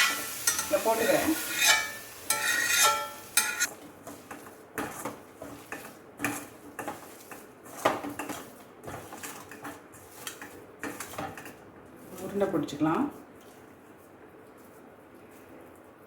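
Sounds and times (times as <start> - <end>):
metal spoon scraping cooking pot: 0.0 - 11.5.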